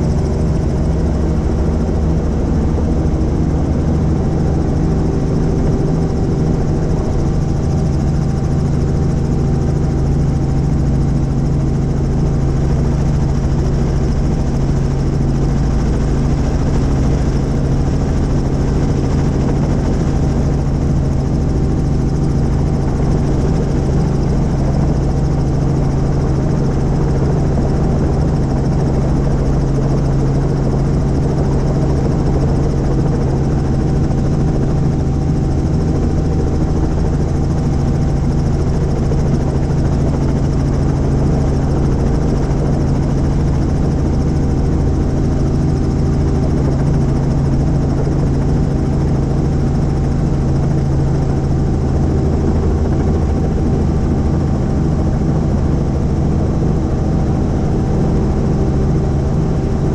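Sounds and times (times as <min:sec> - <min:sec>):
helicopter engine and rotor: 0:00.0 - 0:59.9.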